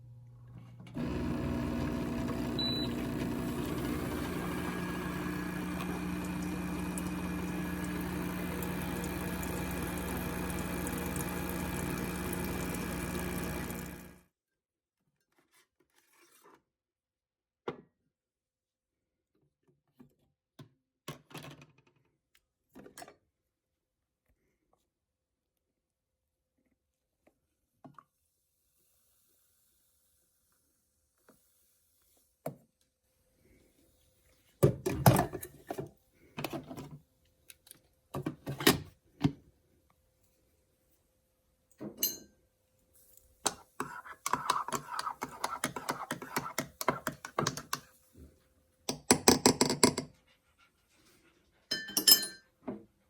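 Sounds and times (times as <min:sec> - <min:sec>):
appliance humming: 0:00.8 - 0:14.2, 0:43.5 - 0:47.8.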